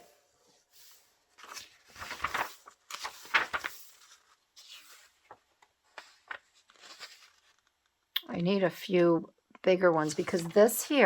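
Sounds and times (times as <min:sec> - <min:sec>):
magazine pages rustling: 0:00.7 - 0:08.0, 0:09.9 - 0:11.0.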